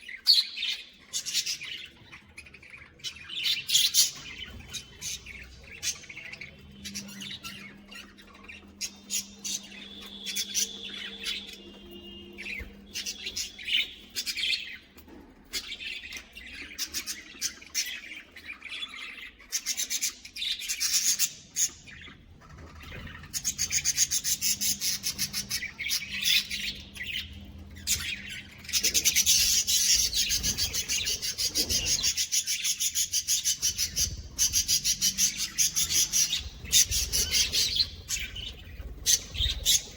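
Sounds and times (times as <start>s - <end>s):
budgerigars chirping: 0.0s - 39.9s
fast even bird chatter: 0.0s - 39.9s.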